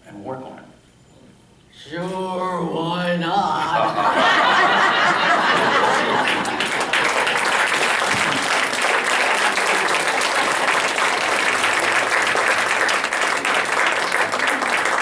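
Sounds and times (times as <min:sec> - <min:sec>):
audience applauding: 0:03.6 - 0:15.0.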